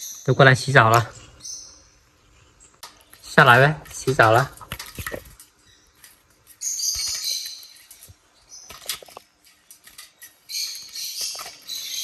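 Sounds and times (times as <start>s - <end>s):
parrots chirping and fluttering: 0.0s - 12.0s.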